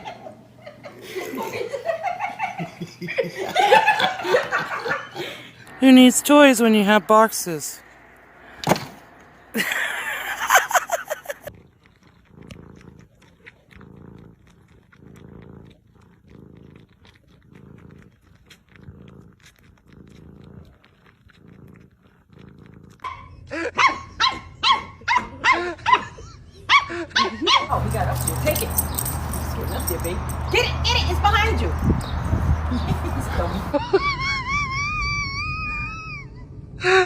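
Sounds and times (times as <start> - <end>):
cat purring: 5.6 - 23.5, 27.7 - 33.7
dog yipping: 23.0 - 30.6.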